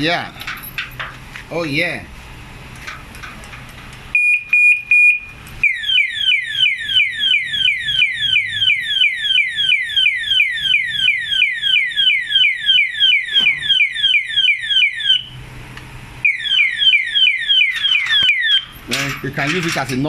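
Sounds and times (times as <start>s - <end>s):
electronic alarm chirps: 4.2s - 15.4s, 16.2s - 18.8s.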